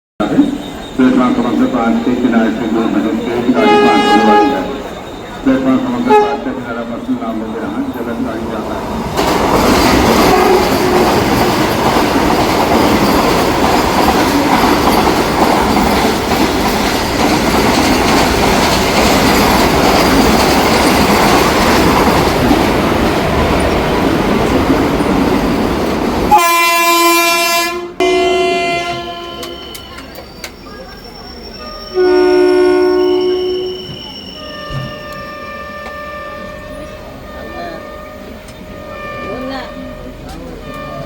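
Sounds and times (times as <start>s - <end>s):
train wheels rushing on rails: 0.2s - 41.0s
locomotive horn blasts: 3.5s - 6.7s, 10.2s - 11.0s, 26.3s - 30.0s, 31.9s - 41.0s.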